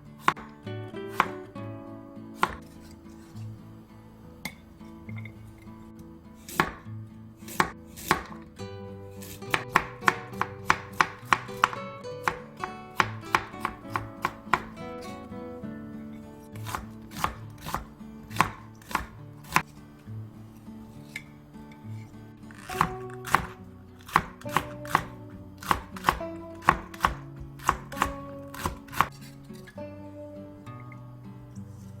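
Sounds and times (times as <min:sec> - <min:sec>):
soft background music: 0:00.0 - 0:32.0
knife chopping on cutting board: 0:00.2 - 0:01.5, 0:02.4 - 0:03.4, 0:06.4 - 0:08.5, 0:09.2 - 0:14.8, 0:16.5 - 0:19.8, 0:22.5 - 0:29.3.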